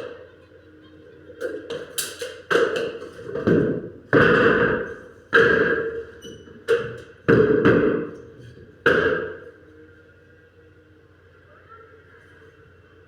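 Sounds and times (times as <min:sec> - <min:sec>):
hammer striking wood: 0:08.8 - 0:09.4.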